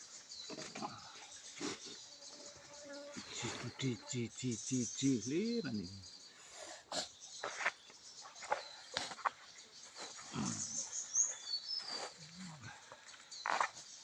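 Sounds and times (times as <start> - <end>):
low vocal sounds: 3.2 - 6.1, 10.3 - 10.9, 12.2 - 12.9.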